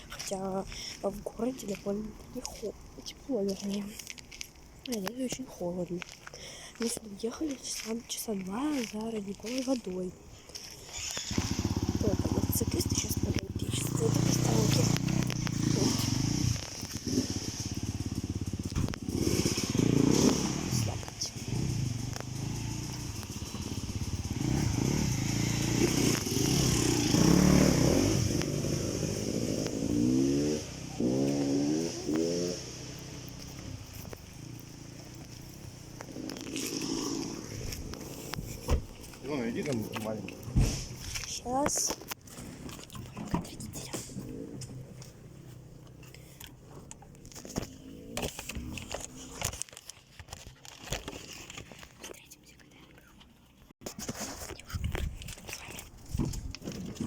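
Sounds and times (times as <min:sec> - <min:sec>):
rustling and crinkling: 0:00.0 - 0:19.6, 0:33.2 - 0:57.0
motorcycle engine revving: 0:10.9 - 0:41.3, 0:44.0 - 0:49.6
motorcycles riding past: 0:11.2 - 0:38.6.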